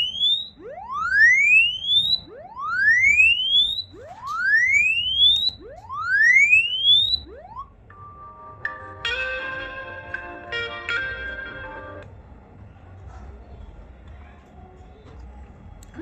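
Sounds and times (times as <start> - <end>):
rising test tone from phone speaker: 0.0 - 7.6.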